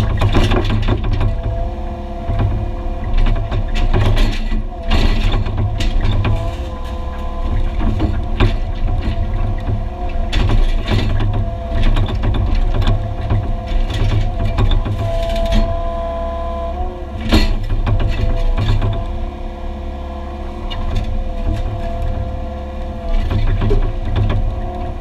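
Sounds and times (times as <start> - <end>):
concrete clanks and knocks: 0.0 - 1.6, 2.2 - 15.8, 17.2 - 19.2, 23.0 - 25.0
excavator diesel engine: 0.0 - 25.0
hydraulic whine: 0.0 - 25.0.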